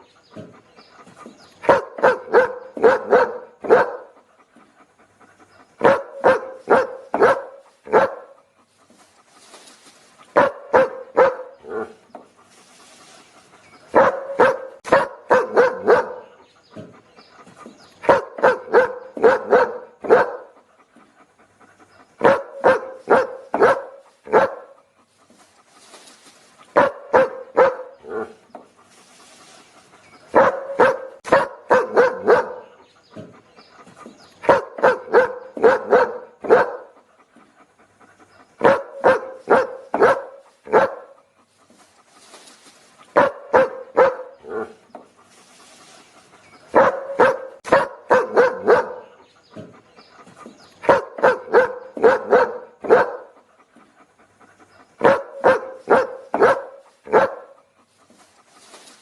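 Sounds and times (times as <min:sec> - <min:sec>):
dog barking: 0:01.6 - 0:04.2, 0:05.8 - 0:08.4, 0:10.3 - 0:12.0, 0:13.9 - 0:16.4, 0:18.0 - 0:20.6, 0:22.2 - 0:24.8, 0:26.8 - 0:28.4, 0:30.3 - 0:33.3, 0:34.4 - 0:37.0, 0:38.6 - 0:41.2, 0:43.1 - 0:44.8, 0:46.7 - 0:49.7, 0:50.8 - 0:53.4, 0:55.0 - 0:57.6.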